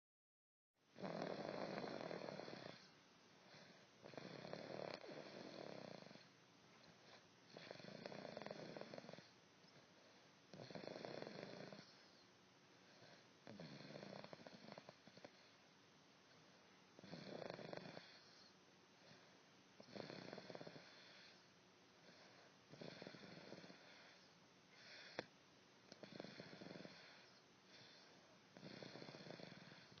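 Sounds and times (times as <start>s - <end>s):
person snoring: 1.0s - 2.9s, 3.5s - 6.3s, 7.1s - 9.3s, 10.5s - 12.0s, 13.0s - 15.5s, 17.0s - 19.2s, 19.8s - 21.4s, 22.0s - 24.2s, 25.9s - 30.0s.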